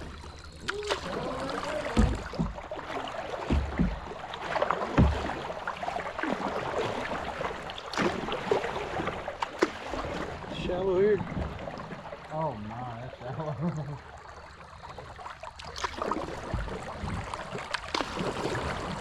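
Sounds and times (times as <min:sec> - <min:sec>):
water splashing against boat hull: 0:00.0 - 0:19.0
low thumps: 0:01.8 - 0:02.8, 0:03.4 - 0:04.2.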